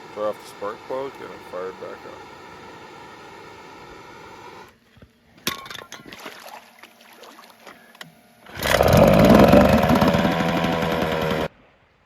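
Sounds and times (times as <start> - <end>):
steady hum: 0.0 - 11.5
small water splashes: 6.0 - 7.8.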